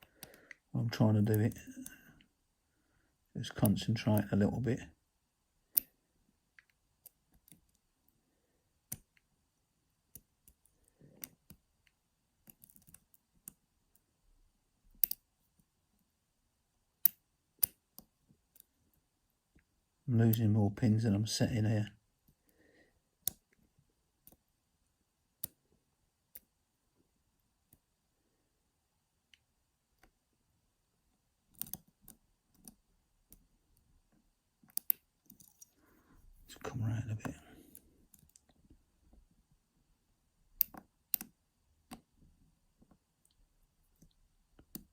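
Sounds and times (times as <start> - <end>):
lock pick clicking in lock: 31.5 - 31.8.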